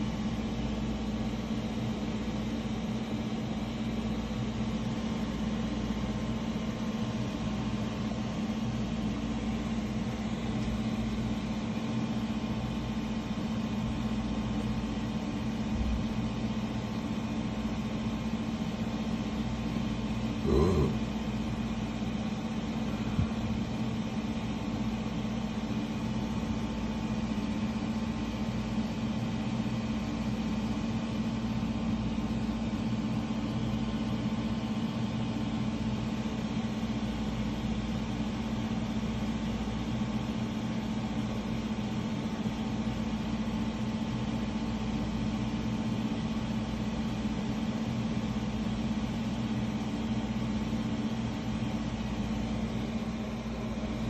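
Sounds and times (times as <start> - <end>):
low machine hum: 0.0 - 54.0.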